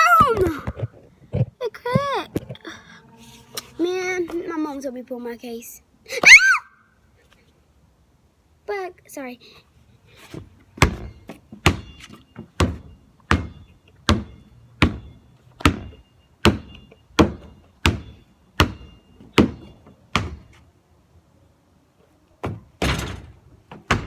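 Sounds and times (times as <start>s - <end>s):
basketball bouncing: 12.6s - 18.8s.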